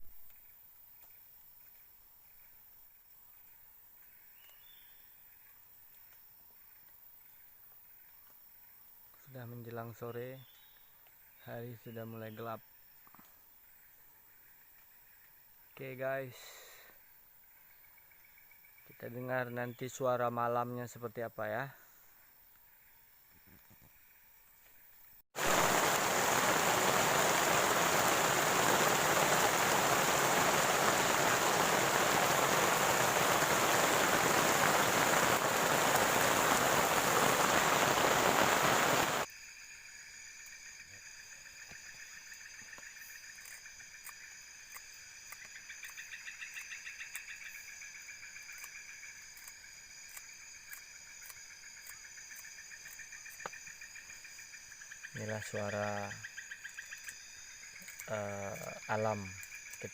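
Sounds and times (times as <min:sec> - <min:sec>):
crickets trilling: 0:00.0 - 0:59.9
insect ticking: 0:20.6 - 0:59.9
heavy rain pouring: 0:25.4 - 0:39.3
frogs calling: 0:25.4 - 0:59.9.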